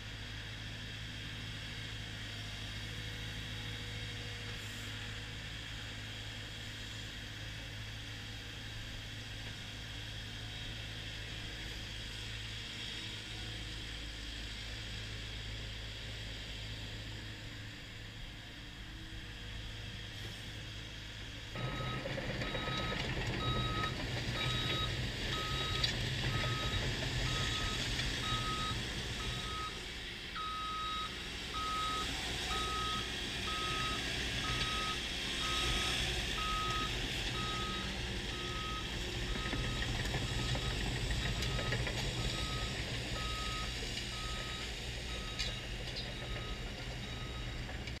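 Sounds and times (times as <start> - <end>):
excavator diesel engine running: 0.1 - 48.0
warning alarm beeps: 21.6 - 29.8, 30.4 - 39.8.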